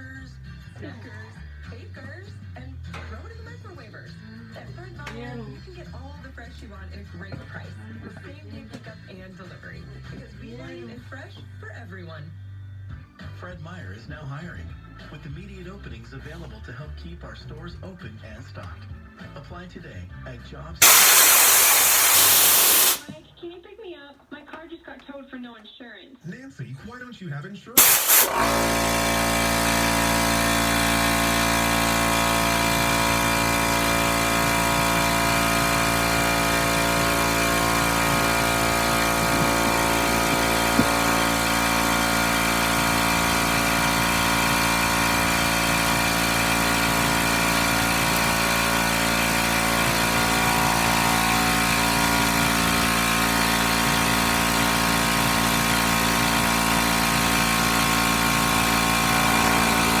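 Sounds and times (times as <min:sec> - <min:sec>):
air compressor running: 0:20.8 - 0:23.1, 0:27.8 - 1:00.0.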